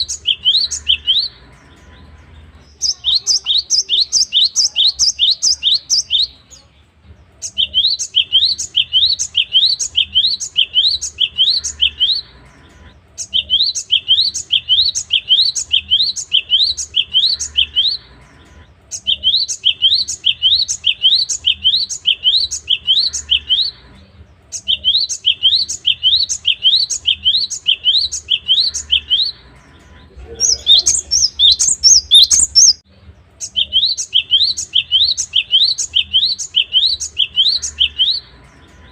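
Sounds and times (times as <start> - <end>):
bird singing rising notes: 0.0 - 6.4, 7.4 - 23.9, 24.5 - 38.9.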